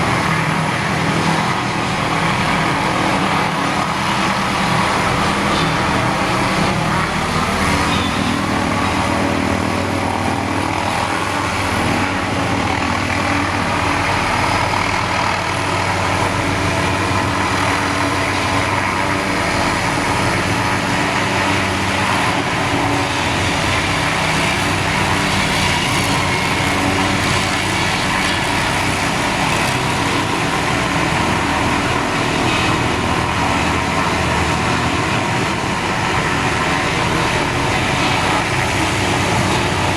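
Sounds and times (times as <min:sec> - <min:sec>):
helicopter rotor and engine drone: 0:00.0 - 0:39.9.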